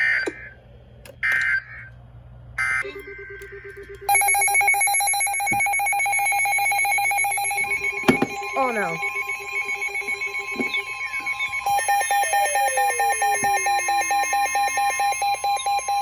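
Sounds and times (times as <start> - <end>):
buzzing electronic alert tone: 6.1 - 16.0
screeching digital data bursts: 7.0 - 16.0.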